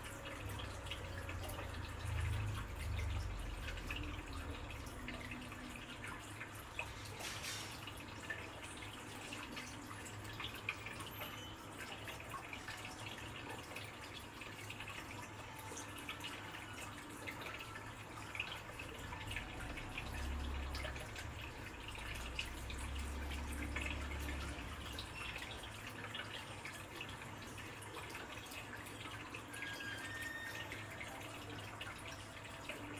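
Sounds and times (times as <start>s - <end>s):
water dripping and trickling: 0.0s - 32.9s.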